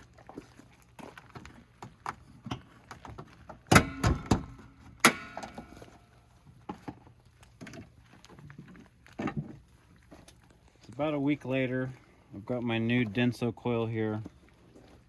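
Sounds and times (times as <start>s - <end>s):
sharp metallic clank: 3.7s - 5.9s.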